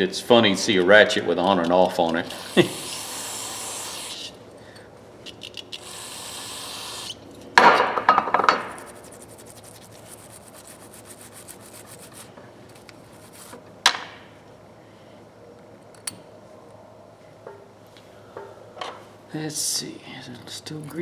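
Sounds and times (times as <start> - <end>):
scrubbing metal parts: 0.8 - 4.4, 5.3 - 7.2, 8.5 - 13.6
sharp scrape: 8.6 - 12.3, 13.0 - 13.6.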